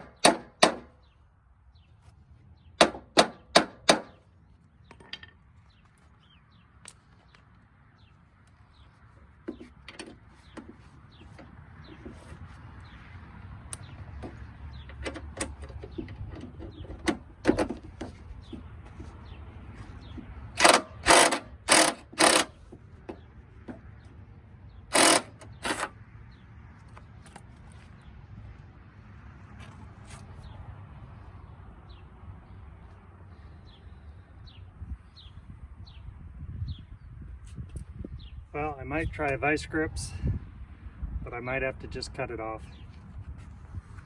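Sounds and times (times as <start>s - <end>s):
loud knocks on metal: 2.8s - 4.2s.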